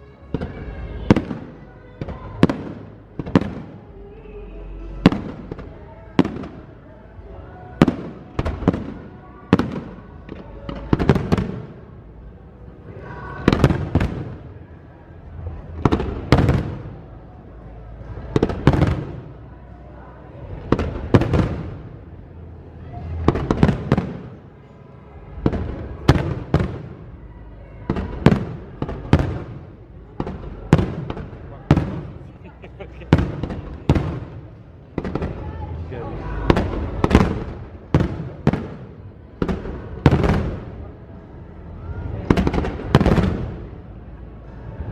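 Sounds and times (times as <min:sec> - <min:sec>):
fireworks bursting with bangs: 0:00.3 - 0:03.9, 0:05.0 - 0:06.8, 0:07.8 - 0:12.0, 0:13.3 - 0:14.6, 0:15.6 - 0:17.0, 0:18.2 - 0:19.4, 0:20.5 - 0:22.1, 0:23.0 - 0:24.6, 0:25.3 - 0:27.2, 0:27.8 - 0:41.0, 0:42.0 - 0:43.8
rumbling echo: 0:07.7 - 0:44.9.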